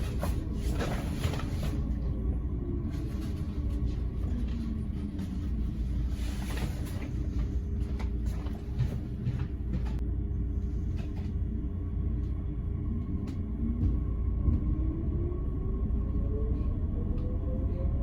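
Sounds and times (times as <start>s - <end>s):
train rumbling on track: 0.0s - 18.0s.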